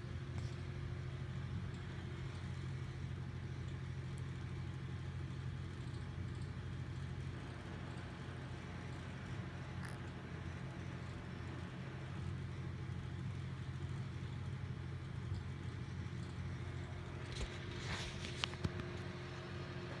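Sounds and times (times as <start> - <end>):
cat snoring: 9.7 - 10.2.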